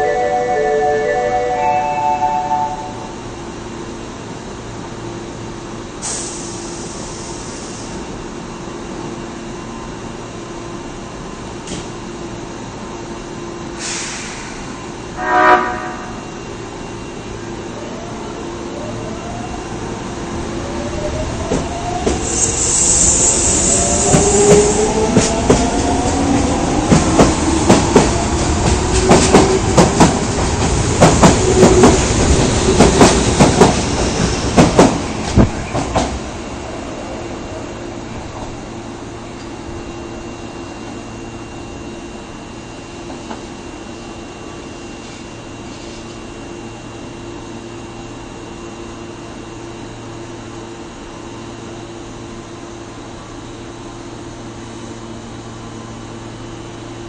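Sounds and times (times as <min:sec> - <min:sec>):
train horn blast: 0:15.2 - 0:16.3
train wheels clicking: 0:23.5 - 0:36.2.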